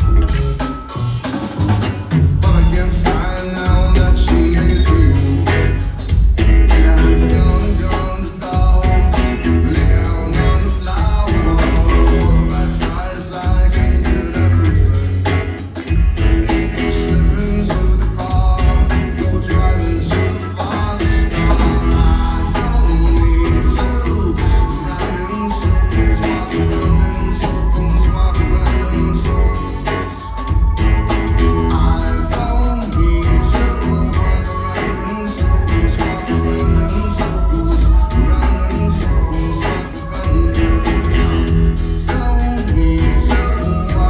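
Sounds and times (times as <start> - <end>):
drums: 0.0 - 44.0
guitar: 0.0 - 44.0
heavy bass line: 0.0 - 44.0
person singing: 2.2 - 44.0.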